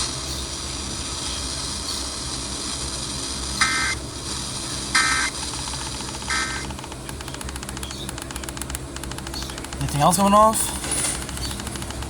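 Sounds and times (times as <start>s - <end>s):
low hum: 0.0s - 12.0s
warbling digital data tones: 5.0s - 10.6s.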